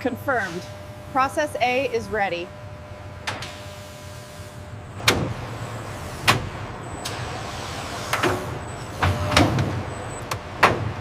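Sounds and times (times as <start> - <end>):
steady machine hum: 0.0 - 11.0
machinery clicks and knocks: 5.0 - 11.0.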